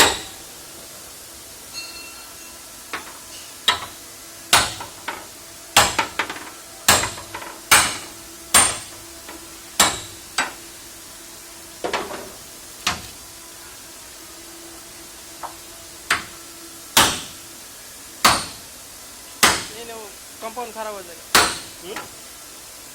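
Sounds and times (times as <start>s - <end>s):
hammer striking metal: 0.0s - 0.4s, 2.9s - 10.6s, 16.1s - 16.3s, 17.0s - 17.4s, 18.2s - 18.6s, 19.4s - 19.8s, 21.3s - 22.1s.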